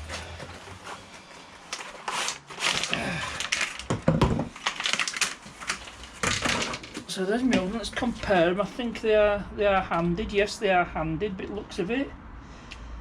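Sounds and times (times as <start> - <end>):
rustling: 0.0 - 3.9.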